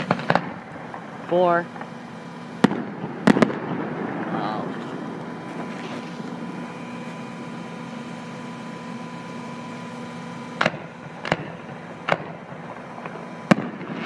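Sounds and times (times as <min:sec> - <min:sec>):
fireworks bangs: 0:00.0 - 0:07.8, 0:10.6 - 0:14.0
steady background hum: 0:00.0 - 0:14.0.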